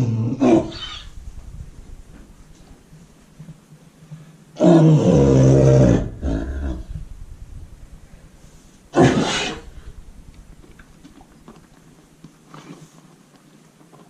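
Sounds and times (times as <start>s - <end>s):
faint rustling: 0.6s - 4.6s, 5.9s - 14.0s
horse coughing: 8.9s - 9.9s.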